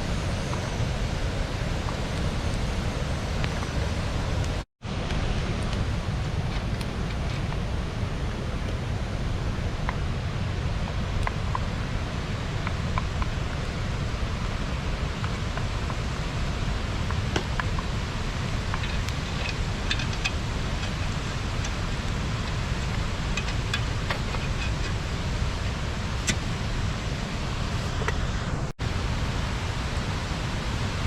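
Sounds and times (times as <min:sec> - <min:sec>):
small crackles and clicks: 0:18.6 - 0:26.5.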